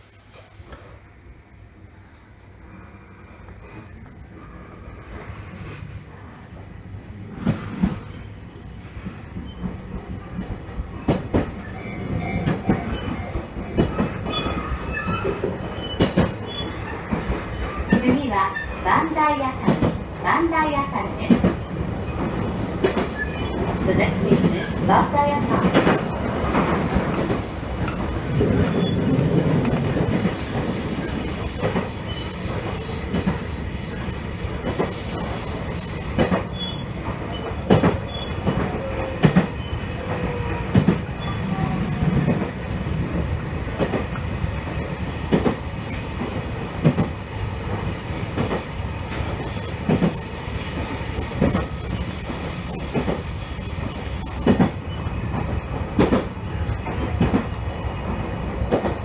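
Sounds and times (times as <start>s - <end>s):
electric train running: 20.8s - 39.4s, 40.0s - 55.1s.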